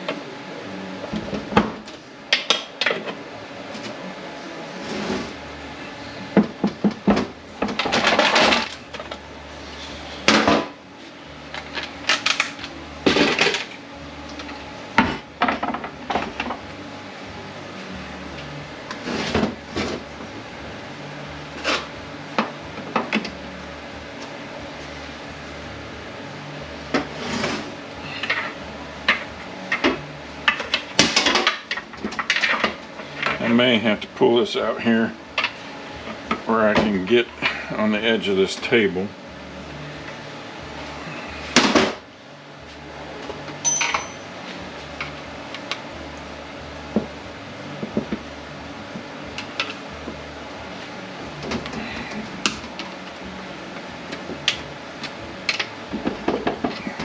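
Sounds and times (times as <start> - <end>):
metal parts clanking: 43.6 - 44.3.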